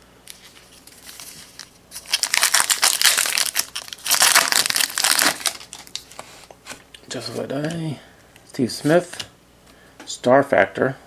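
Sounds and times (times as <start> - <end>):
card pack wrapper crinkling: 0.3 - 6.2.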